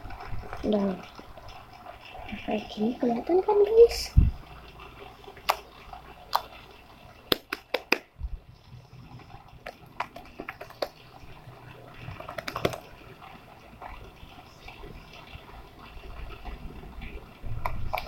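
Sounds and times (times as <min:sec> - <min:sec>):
slime clicking and popping: 0:05.4 - 0:05.7, 0:06.3 - 0:06.6, 0:07.3 - 0:08.1, 0:12.2 - 0:12.8.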